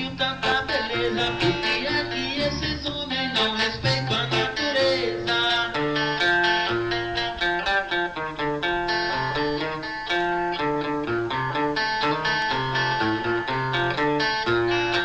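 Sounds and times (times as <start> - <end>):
moving bass line: 0.0 - 3.1
plucked guitar melody: 0.0 - 15.0.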